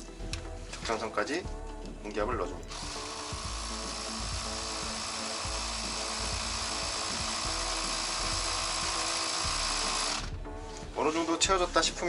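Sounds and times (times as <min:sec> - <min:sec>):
electric air compressor running: 0:02.7 - 0:10.9.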